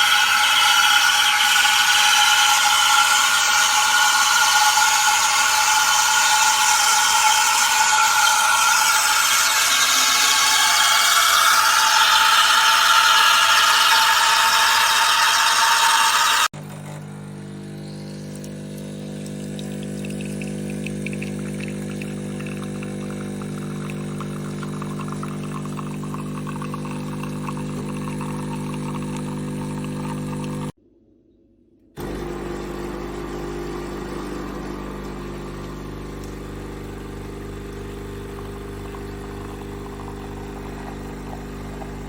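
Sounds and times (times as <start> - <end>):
espresso machine steam hiss: 0.0 - 16.5, 17.8 - 30.7, 36.4 - 42.0
machine pump buzzing hum: 16.4 - 30.8, 32.0 - 42.0.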